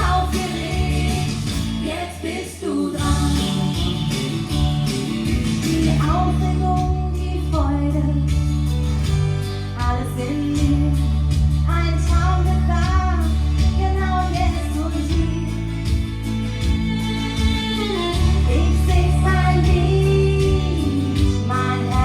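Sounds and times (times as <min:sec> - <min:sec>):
regular drum beat: 0:00.0 - 0:02.0, 0:03.0 - 0:07.8
person singing: 0:00.0 - 0:08.4, 0:17.5 - 0:22.0
country song by band: 0:00.0 - 0:22.0
steady bass: 0:00.0 - 0:22.0.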